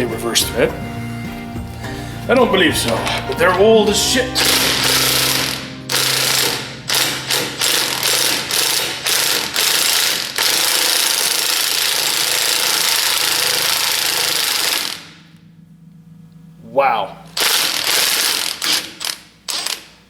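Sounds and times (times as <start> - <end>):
impact wrench hammering: 4.4 - 15.4, 17.3 - 20.0.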